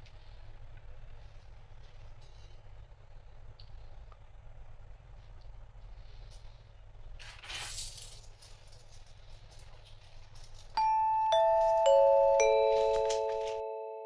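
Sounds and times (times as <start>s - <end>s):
descending bell-like chime: 10.8s - 14.0s.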